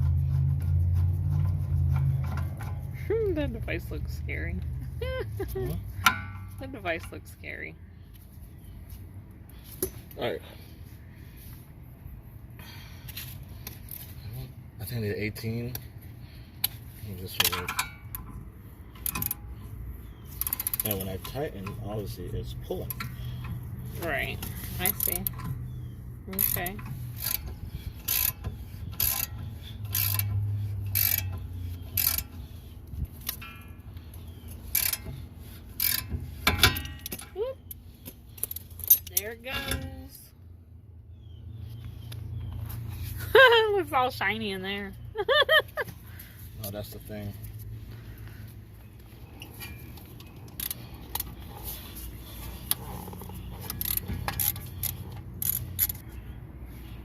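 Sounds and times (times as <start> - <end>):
ratchet wrench clicking: 19.0 - 19.4, 20.3 - 21.8, 26.3 - 32.4, 34.6 - 37.3, 49.9 - 51.4, 52.6 - 56.0.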